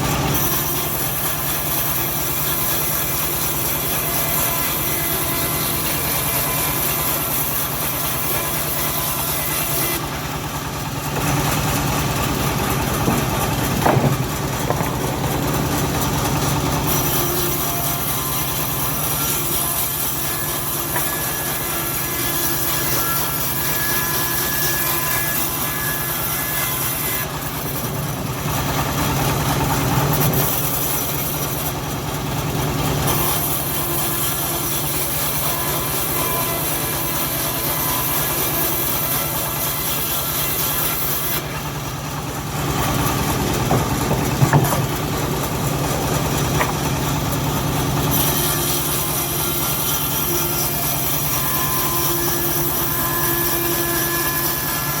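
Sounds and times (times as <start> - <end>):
saw cutting log: 0.0 - 55.0
sawmill engine running: 0.0 - 55.0
knock: 13.0 - 15.1, 43.7 - 44.9.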